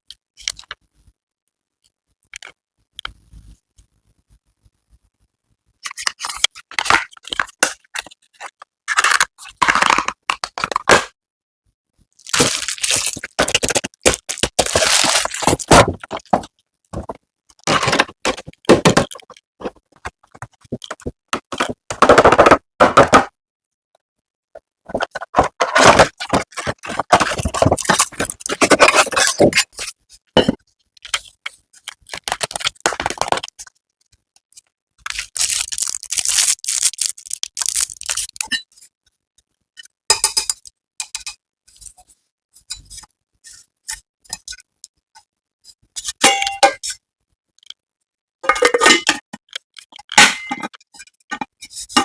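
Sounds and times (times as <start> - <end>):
packaging crinkling and cracking: 12.2 - 16.5, 25.9 - 29.2, 32.0 - 33.6, 35.0 - 38.5.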